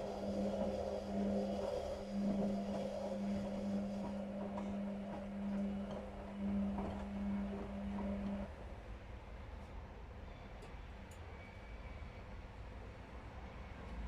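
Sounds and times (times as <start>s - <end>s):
washing machine motor hum: 0.0s - 8.5s.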